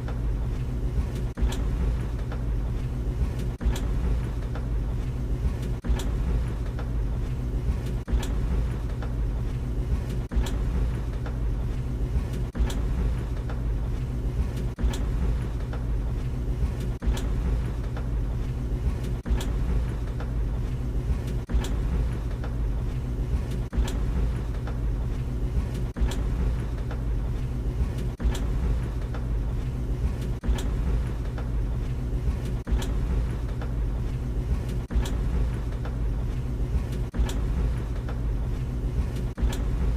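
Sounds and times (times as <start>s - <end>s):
tumble dryer hum: 0.0s - 39.9s
clothes knocking in drum: 18.9s - 20.4s, 21.2s - 22.6s, 23.6s - 27.1s, 27.9s - 29.3s, 34.6s - 36.0s.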